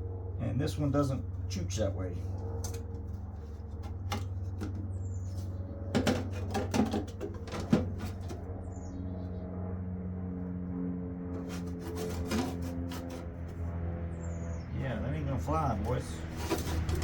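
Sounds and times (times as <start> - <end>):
steady low hum: 0.0 - 17.0
blower motor knocks and clunks: 3.7 - 5.2, 5.9 - 8.5, 15.8 - 17.0.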